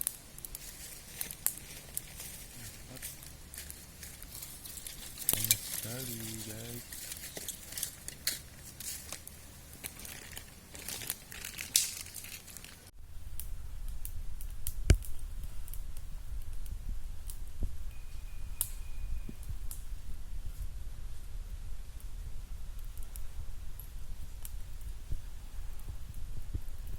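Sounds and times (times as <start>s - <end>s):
crinkling and rustling: 0.0s - 12.9s
low steady rumble: 0.2s - 26.9s.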